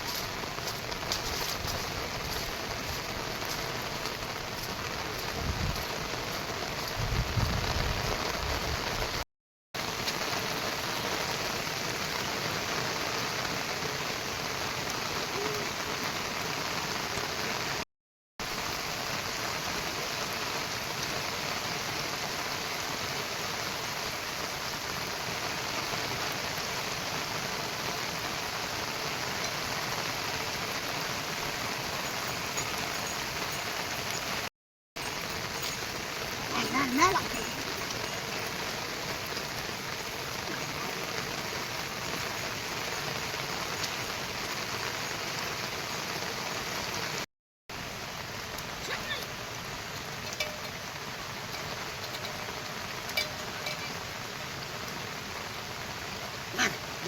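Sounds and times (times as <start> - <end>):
heavy rain falling: 0.0 - 9.2, 9.8 - 17.8, 18.4 - 57.0.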